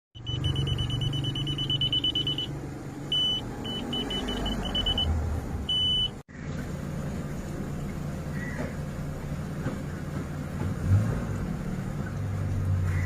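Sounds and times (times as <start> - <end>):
high-pitched electronic beeping: 0.2 - 2.5, 3.1 - 5.1.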